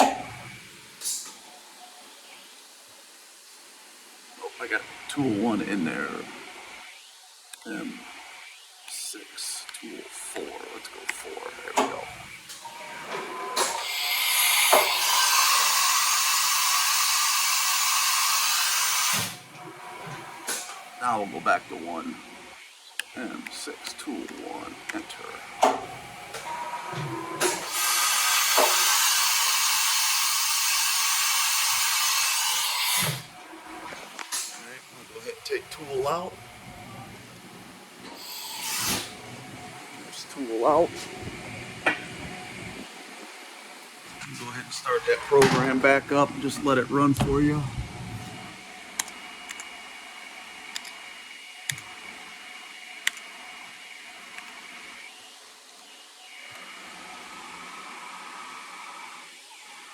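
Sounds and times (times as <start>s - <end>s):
machinery humming with high whine: 0.0s - 59.9s
compressed air hissing: 13.8s - 19.4s, 38.1s - 39.2s.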